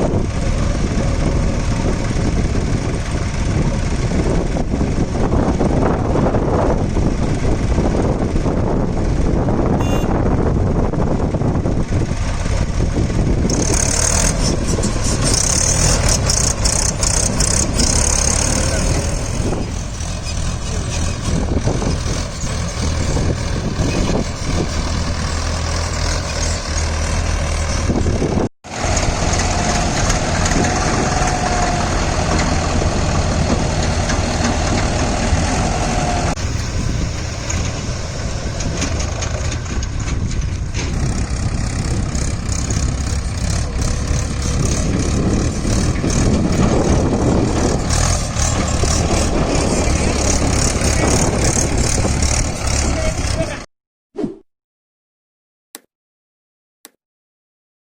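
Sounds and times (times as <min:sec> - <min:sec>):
diesel engines under load: 0:00.0 - 0:53.7.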